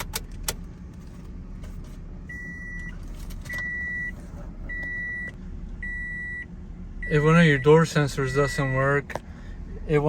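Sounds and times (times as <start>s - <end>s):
dashboard warning chime beeping: 2.2s - 9.1s.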